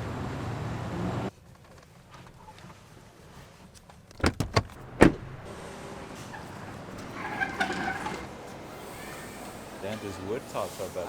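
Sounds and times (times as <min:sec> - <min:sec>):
loud thump: 0:04.2 - 0:05.4
quick knocks: 0:04.2 - 0:05.4.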